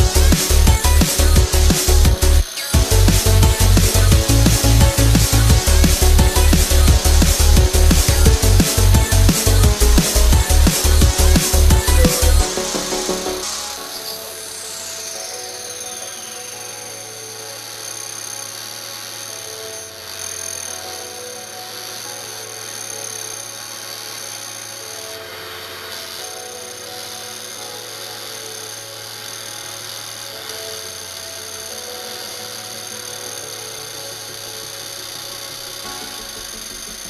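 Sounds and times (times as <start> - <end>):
background music: 0.0 - 37.0
high-pitched laser engraver whine: 11.8 - 37.0.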